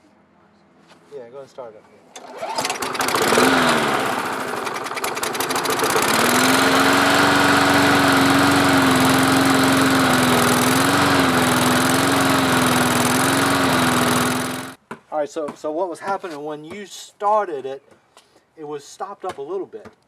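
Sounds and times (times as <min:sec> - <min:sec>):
lawn mower engine running: 0:02.2 - 0:14.8.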